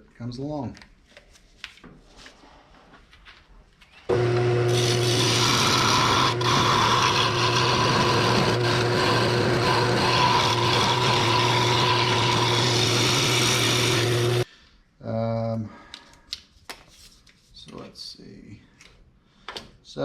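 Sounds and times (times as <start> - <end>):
lathe motor hum: 4.1 - 14.4
scraper rasping on spinning wood: 4.7 - 14.4.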